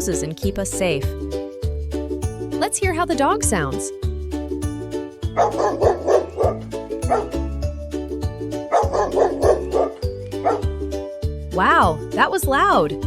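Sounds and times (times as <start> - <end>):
light background music: 0.0 - 13.0
dog barking loudly: 5.4 - 7.4, 8.7 - 10.7.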